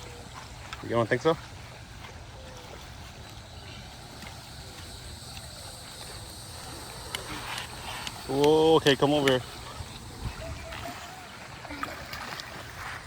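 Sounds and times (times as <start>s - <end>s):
rushing water: 1.5s - 13.0s
wind on microphone: 9.0s - 11.6s.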